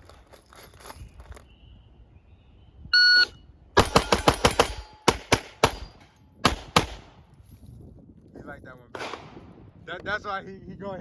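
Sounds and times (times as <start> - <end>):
rapid pistol shots: 3.8 - 7.2, 9.0 - 9.5.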